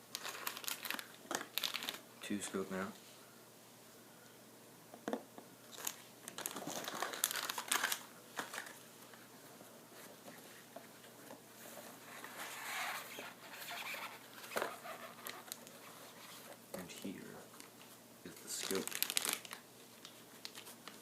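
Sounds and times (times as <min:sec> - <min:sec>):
packaging crinkling: 0:00.1 - 0:02.0, 0:05.7 - 0:08.8, 0:12.2 - 0:16.4, 0:17.0 - 0:21.0.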